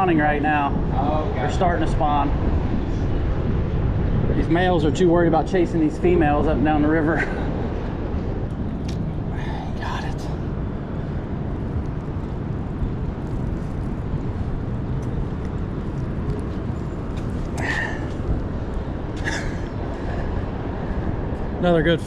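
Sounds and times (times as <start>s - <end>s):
city background rumble: 0.0s - 22.0s.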